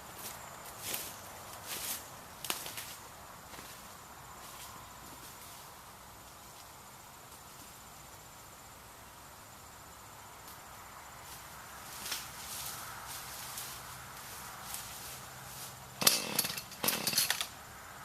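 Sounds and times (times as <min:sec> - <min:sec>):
rustles: 0:00.0 - 0:17.7
insects trilling: 0:00.0 - 0:18.0.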